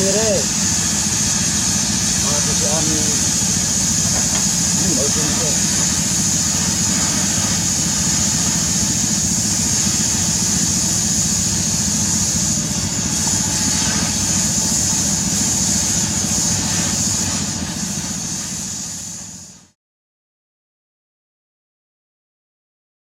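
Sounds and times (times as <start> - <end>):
diesel engine running: 0.0 - 18.6
high-pitched hiss: 0.0 - 19.8.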